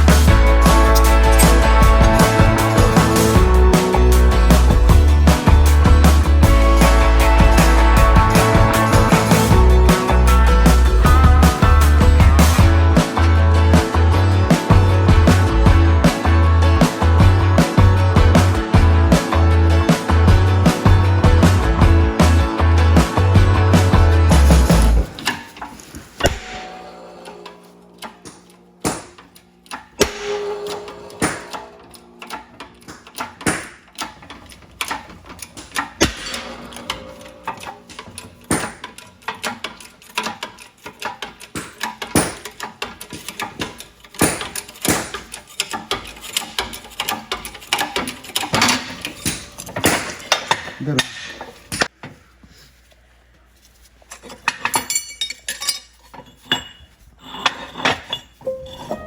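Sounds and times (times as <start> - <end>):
hand tools clinking on metal: 0.0 - 13.4, 24.4 - 51.9, 54.1 - 59.0.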